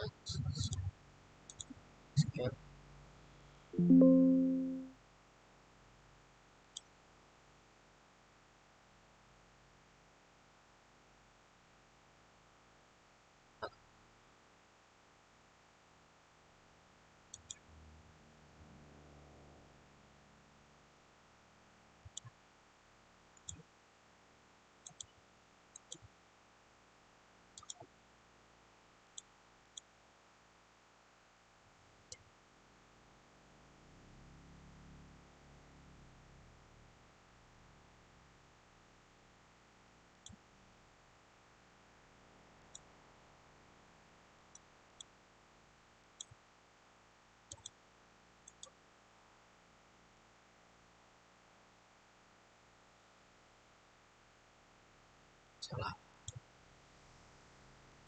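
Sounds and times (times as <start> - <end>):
faint steady hiss: 0.0 - 58.0
computer mouse clicking: 17.4 - 17.6, 24.8 - 25.1, 25.8 - 26.0, 27.6 - 27.9, 47.5 - 47.8, 48.5 - 48.7.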